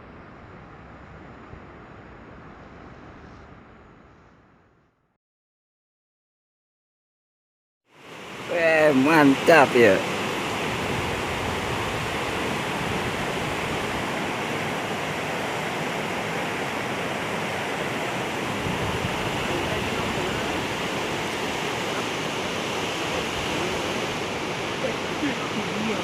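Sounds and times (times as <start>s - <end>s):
rushing river water: 7.9s - 26.0s.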